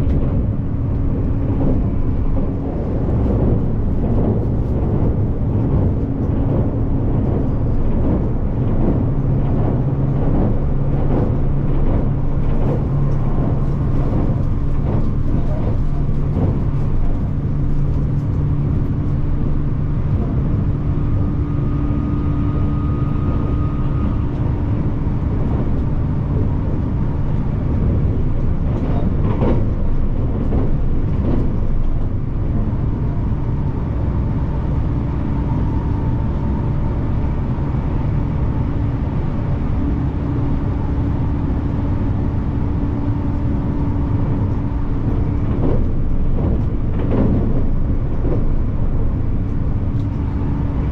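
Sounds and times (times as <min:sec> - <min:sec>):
train rumbling: 0:00.0 - 0:50.9.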